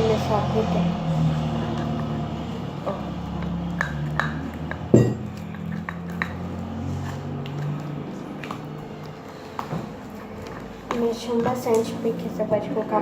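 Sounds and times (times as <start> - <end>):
spoon knocking on pot: 4.9 - 5.4.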